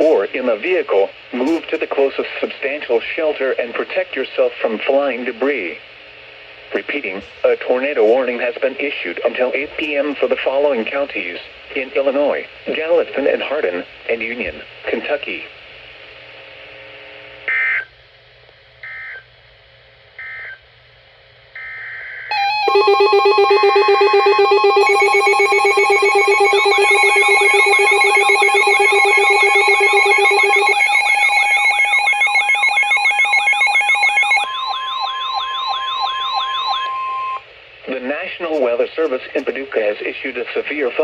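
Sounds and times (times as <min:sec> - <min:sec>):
screeching digital data bursts: 0:22.3 - 0:37.4
steady alert tones: 0:22.3 - 0:37.4
warbling siren-like sweeps: 0:22.3 - 0:37.4.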